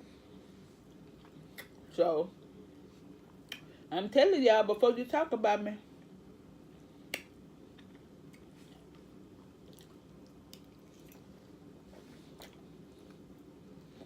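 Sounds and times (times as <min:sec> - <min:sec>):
person chewing food: 0:07.7 - 0:13.5.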